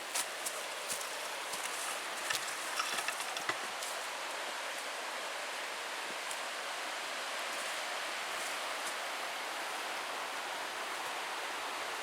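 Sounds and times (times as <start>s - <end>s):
stream rushing: 0.0s - 12.0s
light clicks and crunches: 0.9s - 4.0s.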